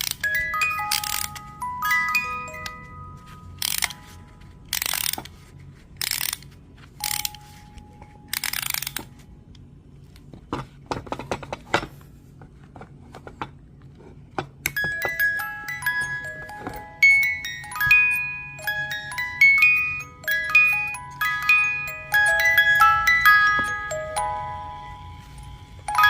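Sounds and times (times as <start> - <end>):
music box notes: 0.0 - 4.8, 7.0 - 8.6, 14.7 - 26.0
mechanism clicking: 3.6 - 4.0, 8.3 - 9.1.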